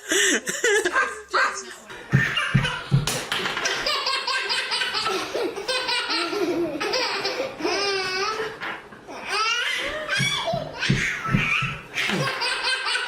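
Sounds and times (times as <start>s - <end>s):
baby laughing: 3.6s - 13.0s.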